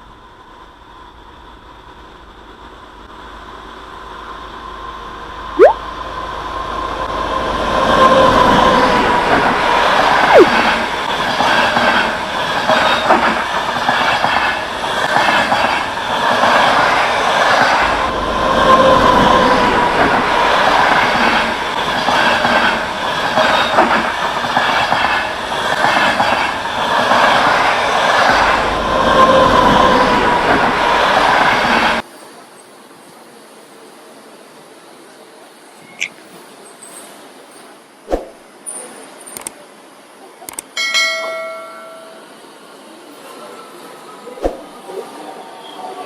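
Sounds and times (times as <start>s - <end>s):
train wheels clattering on rails: 7.8s - 32.1s.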